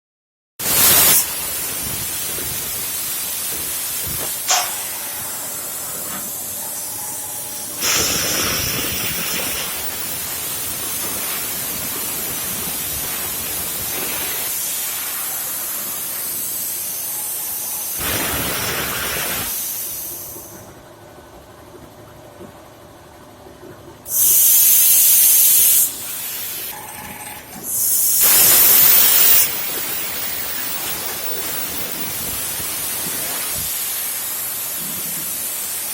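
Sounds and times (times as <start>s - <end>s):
plasma arc hissing: 0.6s - 20.6s, 24.1s - 26.8s, 27.6s - 35.9s
faint machine hum: 1.2s - 35.9s
sharp click: 4.0s - 5.0s.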